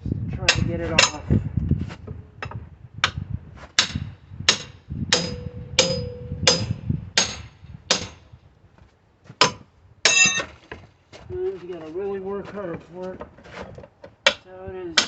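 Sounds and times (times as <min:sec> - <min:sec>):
metallic clang: 0:05.2 - 0:08.2, 0:10.1 - 0:10.6.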